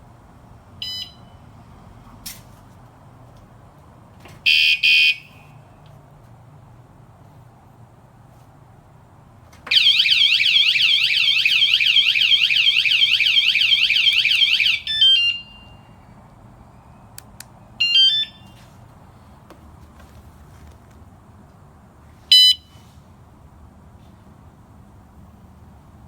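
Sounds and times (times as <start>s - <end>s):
alarm chirp: 0.8s - 1.4s, 9.7s - 16.0s, 17.8s - 18.6s
alarm siren warbling: 9.7s - 15.8s.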